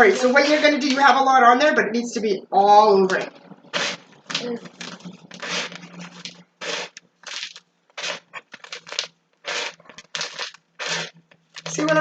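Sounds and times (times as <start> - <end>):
birdseed rustling in a bowl: 3.8 - 11.9.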